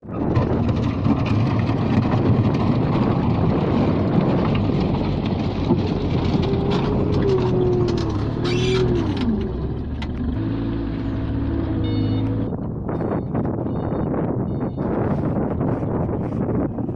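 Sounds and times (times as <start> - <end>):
skid steer loader engine: 0.0 - 16.9.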